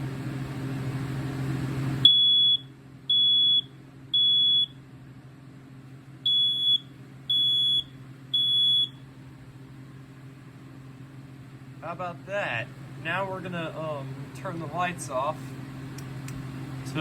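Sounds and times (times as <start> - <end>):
smoke alarm beeping: 2.0 - 4.8, 6.2 - 9.1.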